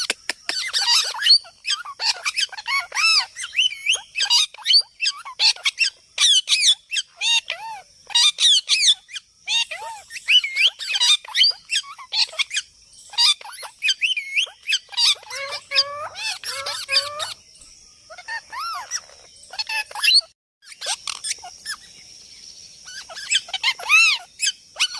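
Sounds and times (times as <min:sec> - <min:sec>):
parrot chirping and squawking: 0:00.0 - 0:17.4, 0:18.1 - 0:21.9, 0:22.8 - 0:24.9.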